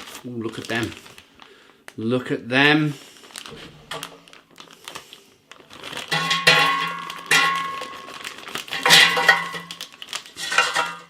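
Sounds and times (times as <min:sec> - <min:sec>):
potato wedges clattering in metal basket: 0:06.0 - 0:11.0.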